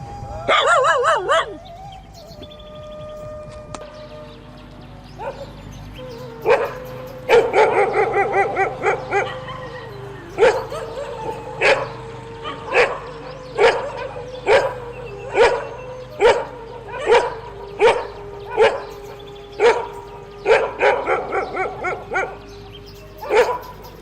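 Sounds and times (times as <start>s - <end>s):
dog barking: 0.5s - 1.6s, 6.4s - 18.9s, 23.2s - 24.0s.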